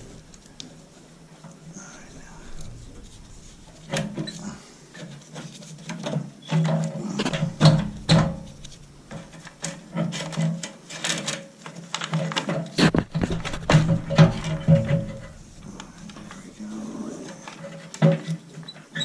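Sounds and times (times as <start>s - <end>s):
steady low hum: 0.0s - 5.4s, 7.0s - 10.4s, 12.8s - 17.7s
tools knocking and scraping metal: 2.5s - 16.6s, 17.3s - 19.0s.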